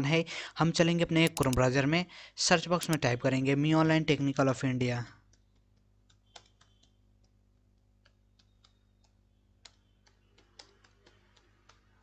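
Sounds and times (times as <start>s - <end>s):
keyboard key clicks: 1.1s - 1.6s, 2.8s - 3.0s.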